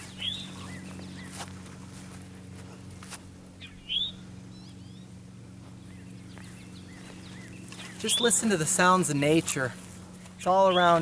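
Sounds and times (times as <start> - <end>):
songbirds chirping: 0.0 - 11.0
steady low hum: 0.0 - 11.0.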